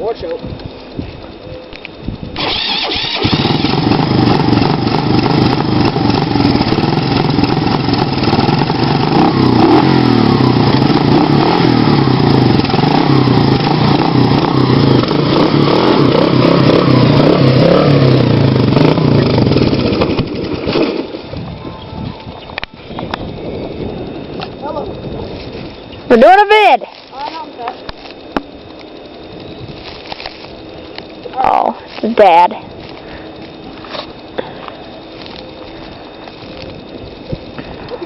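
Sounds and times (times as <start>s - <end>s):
quad bike engine revving: 2.4s - 21.4s.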